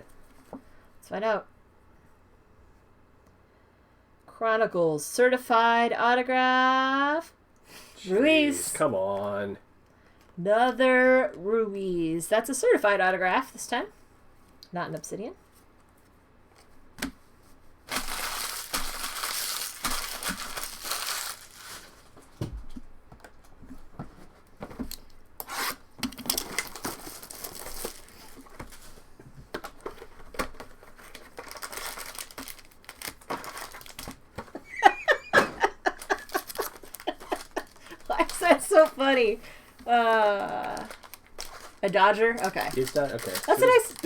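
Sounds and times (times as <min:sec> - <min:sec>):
card wrappers tearing and crinkling: 0:17.8 - 0:22.2, 0:25.4 - 0:29.0, 0:29.6 - 0:34.3, 0:35.7 - 0:39.0, 0:40.3 - 0:44.0.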